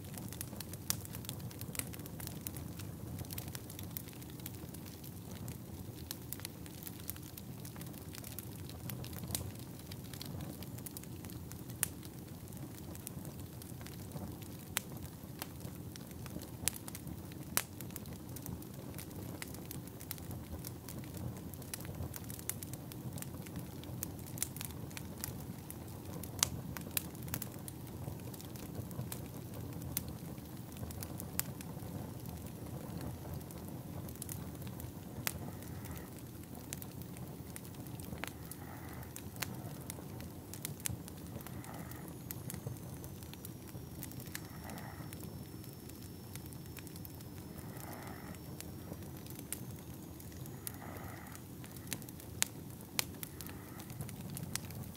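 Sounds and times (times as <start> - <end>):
fire crackling and popping: 0.0 - 54.9.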